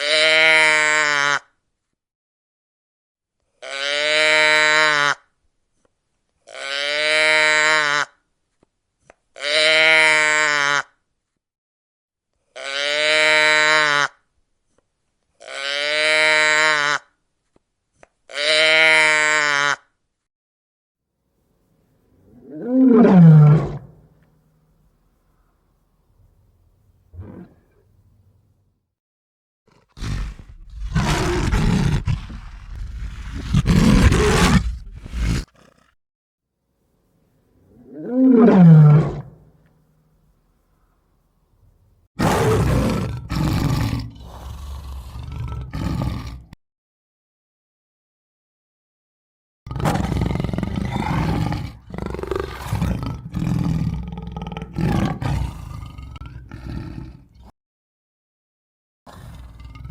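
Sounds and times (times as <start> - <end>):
large animal calling: 30.0 - 35.8.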